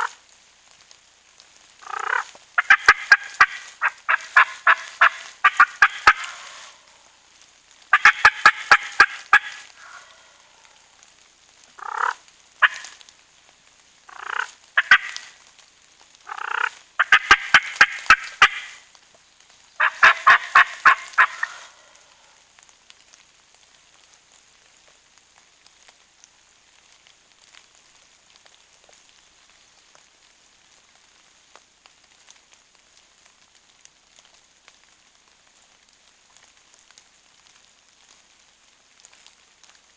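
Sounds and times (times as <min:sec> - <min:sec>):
turkey short single calls: 0:01.8 - 0:06.8, 0:07.9 - 0:10.3, 0:11.8 - 0:13.0, 0:14.1 - 0:15.4, 0:16.3 - 0:18.8, 0:19.8 - 0:22.0
turkey gobbling: 0:01.8 - 0:06.9, 0:07.9 - 0:10.3, 0:11.8 - 0:13.0, 0:14.1 - 0:15.4, 0:16.3 - 0:18.8, 0:19.8 - 0:22.0.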